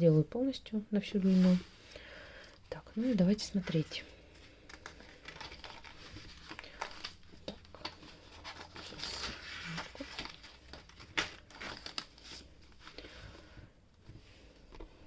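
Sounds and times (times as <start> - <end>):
paper rustling and crinkling: 3.5 - 13.3.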